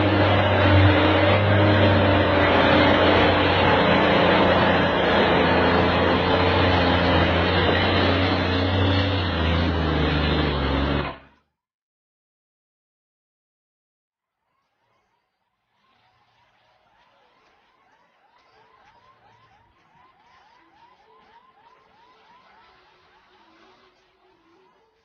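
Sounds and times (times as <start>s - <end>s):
heavy vehicle engine running: 0.0s - 11.3s.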